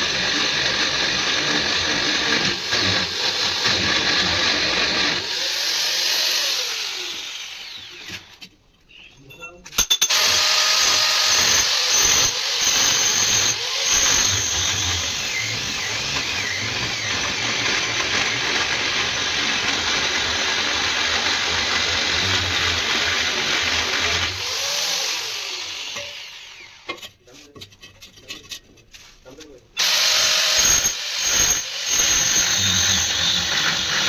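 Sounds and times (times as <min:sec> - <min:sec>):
power tool working steel: 0:00.0 - 0:08.4, 0:10.0 - 0:27.0, 0:29.8 - 0:34.0.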